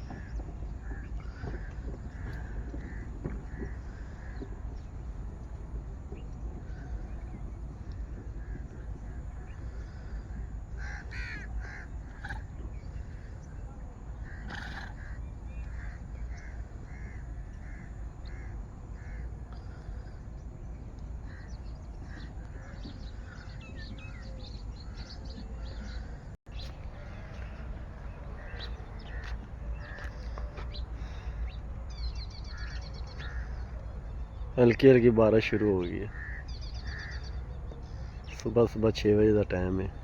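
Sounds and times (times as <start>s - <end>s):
crows cawing: 0.0s - 4.7s, 6.6s - 7.2s, 8.1s - 13.4s, 14.2s - 20.2s, 21.2s - 33.8s, 35.4s - 37.4s
low background rumble: 0.0s - 40.0s
small birds chirping: 0.0s - 40.0s.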